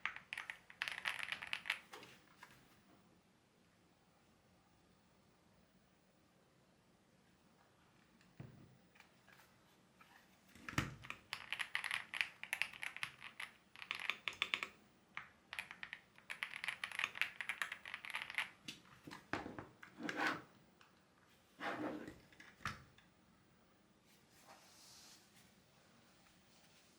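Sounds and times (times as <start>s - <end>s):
mechanical keyboard key clicks: 11.0s - 14.7s, 15.6s - 18.5s.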